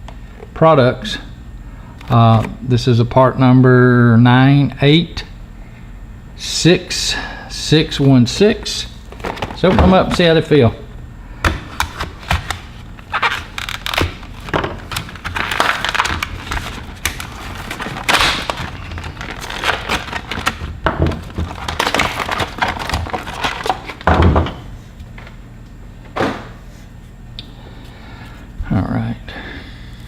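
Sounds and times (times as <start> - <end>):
packaging rustling and tearing: 11.7 - 24.0.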